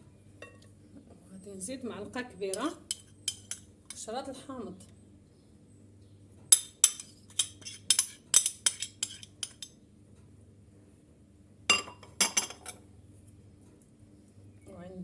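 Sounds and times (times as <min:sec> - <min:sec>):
spoon clinking against mixing bowl: 0:02.5 - 0:03.7, 0:06.5 - 0:09.8, 0:11.7 - 0:12.8.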